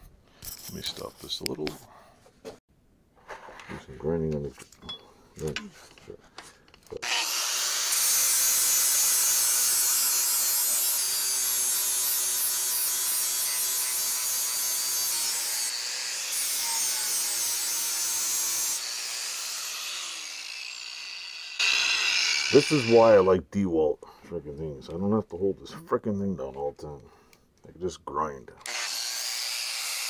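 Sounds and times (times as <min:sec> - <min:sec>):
grinder grinding steel: 0:06.9 - 0:23.4, 0:28.6 - 0:30.0
grinder motor whine: 0:18.8 - 0:23.3.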